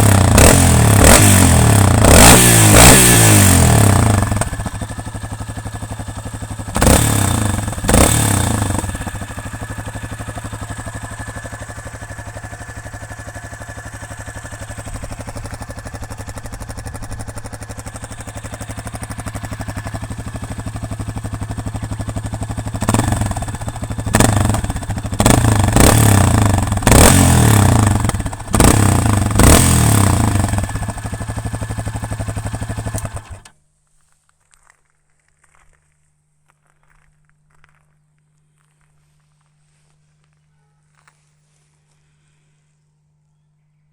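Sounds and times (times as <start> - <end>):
motorcycle engine idling and revving: 0.0 - 33.6.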